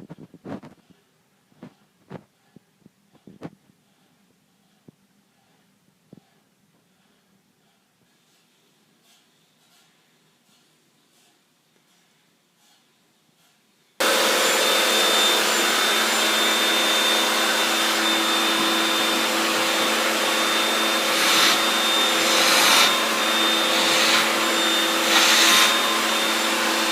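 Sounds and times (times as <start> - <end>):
blower motor whining hum: 14.0 - 26.9.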